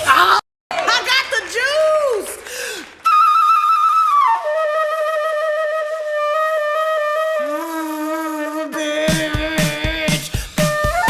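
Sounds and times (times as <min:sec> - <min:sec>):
flute music: 0:03.0 - 0:11.0.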